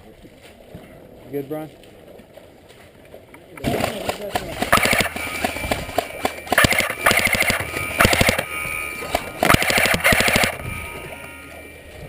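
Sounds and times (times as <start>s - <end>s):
airsoft gun bursts: 3.6s - 10.6s.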